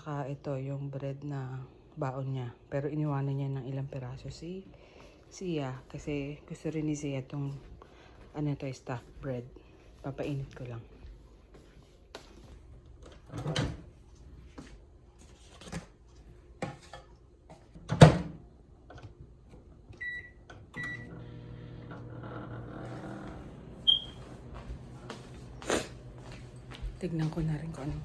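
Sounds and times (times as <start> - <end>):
microwave oven humming: 18.4 - 27.0
higher beep: 23.8 - 24.2
short keypad beeps: 23.8 - 24.2.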